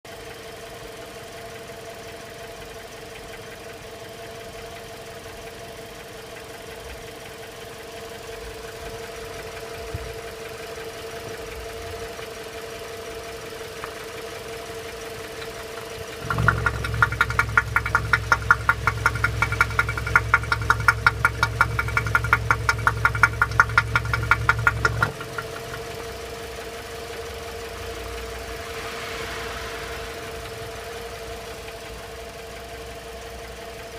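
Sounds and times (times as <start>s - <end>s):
petrol engine knocking: 15.0s - 28.0s
low hum: 23.3s - 33.5s.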